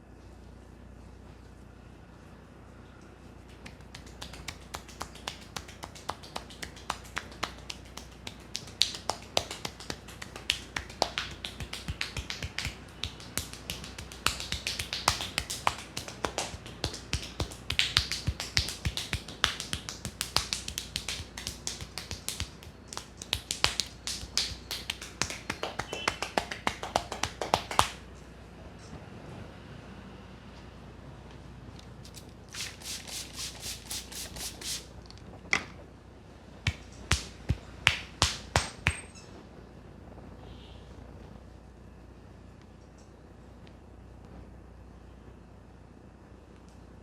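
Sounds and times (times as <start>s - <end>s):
hands slapping and clicking on head: 3.5s - 28.0s, 32.1s - 34.8s, 36.7s - 39.1s.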